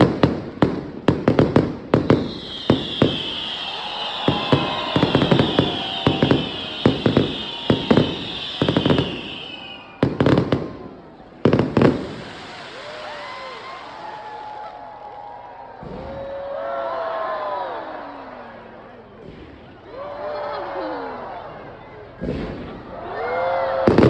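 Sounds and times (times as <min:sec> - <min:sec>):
fireworks bangs and pops: 0:00.0 - 0:14.4, 0:19.2 - 0:19.8, 0:22.2 - 0:22.9.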